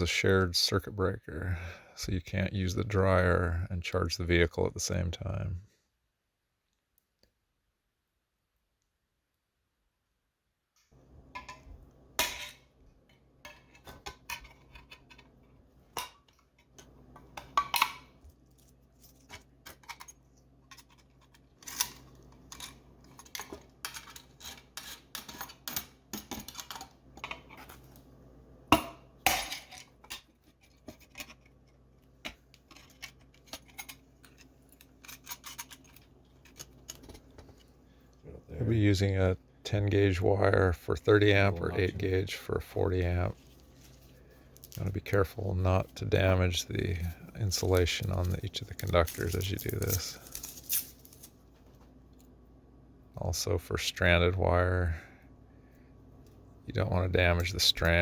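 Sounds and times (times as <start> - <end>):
faint low hum: 0.0 - 58.0
metal parts clicking and clinking: 32.6 - 37.3, 47.7 - 51.4.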